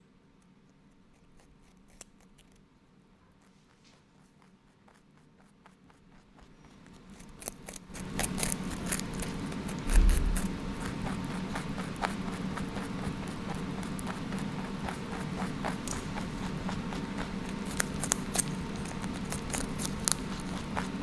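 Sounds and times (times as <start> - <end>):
low thump: 9.8 - 10.9.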